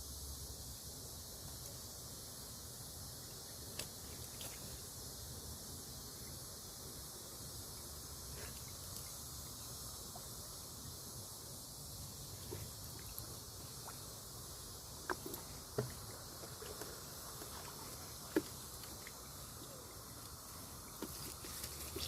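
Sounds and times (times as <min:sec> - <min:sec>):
steady hiss: 0:00.0 - 0:22.0
water splashing and sloshing: 0:12.3 - 0:22.0.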